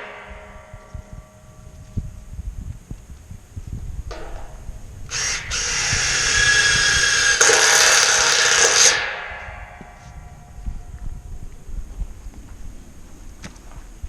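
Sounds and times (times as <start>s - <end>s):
handheld power tool motor: 5.1s - 9.0s.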